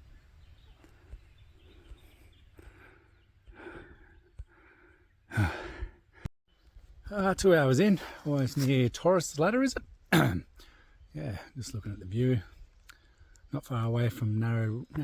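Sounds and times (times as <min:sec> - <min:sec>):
man breathing hard: 0:01.6 - 0:06.3
loud sigh: 0:05.3 - 0:06.0.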